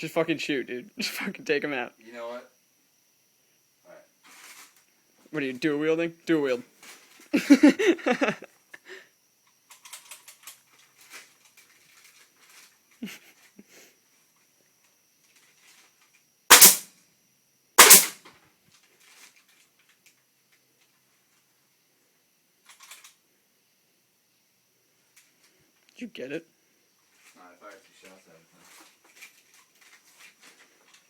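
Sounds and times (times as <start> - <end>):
nail gun shots: 16.5 - 16.9, 17.8 - 18.2.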